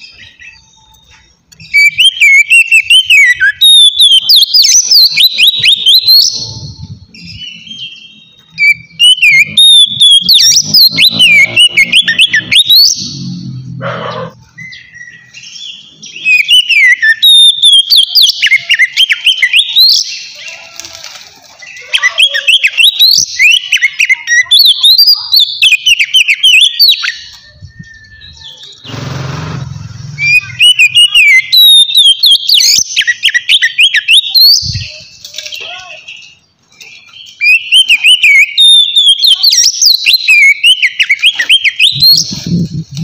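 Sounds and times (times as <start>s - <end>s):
bird whistled song: 0.0s - 20.4s, 21.6s - 43.0s
short noisy burst: 28.8s - 30.6s.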